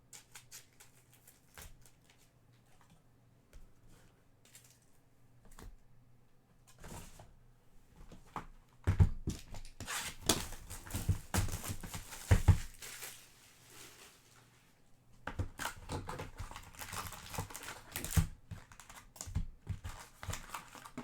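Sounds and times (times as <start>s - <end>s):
knocks of cards and packaging: 8.0s - 13.1s, 15.2s - 21.0s
card wrappers crinkling and tearing: 10.3s - 14.2s, 15.6s - 21.0s.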